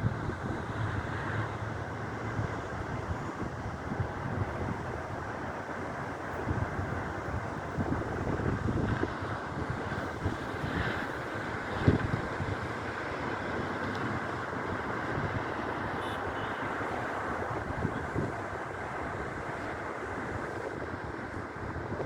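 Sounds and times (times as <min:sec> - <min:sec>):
wind buffeting microphone: 0:06.1 - 0:15.8.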